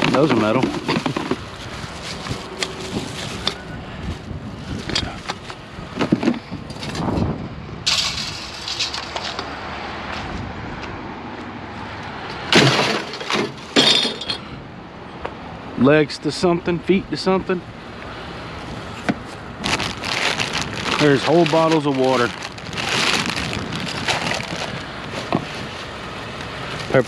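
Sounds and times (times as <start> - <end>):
junk being rummaged through: 0.0 - 7.2, 7.9 - 9.5, 12.5 - 14.5, 19.1 - 27.0
outdoor background noise: 0.0 - 27.0.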